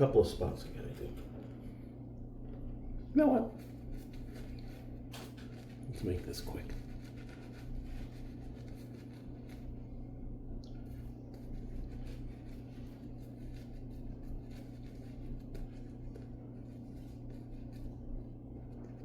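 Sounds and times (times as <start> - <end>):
steady low hum: 0.0 - 19.0
razor scraping stubble: 3.5 - 9.9, 10.8 - 19.0.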